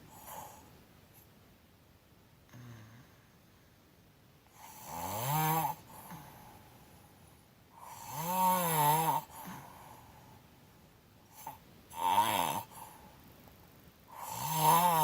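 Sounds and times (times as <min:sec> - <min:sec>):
person snoring: 0:02.5 - 0:03.2, 0:04.6 - 0:06.4, 0:07.8 - 0:10.0, 0:11.4 - 0:13.0, 0:14.1 - 0:15.0.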